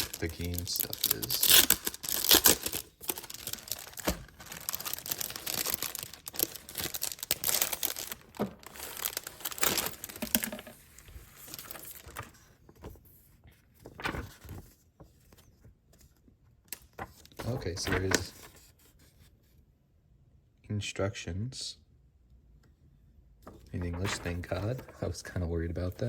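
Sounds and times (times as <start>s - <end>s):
packaging crinkling and tearing: 0.0s - 12.4s.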